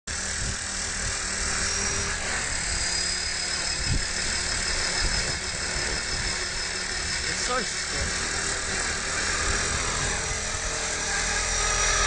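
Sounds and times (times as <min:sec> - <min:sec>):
helicopter rotor noise: 0:00.1 - 0:12.0
high motor whine: 0:00.1 - 0:12.0.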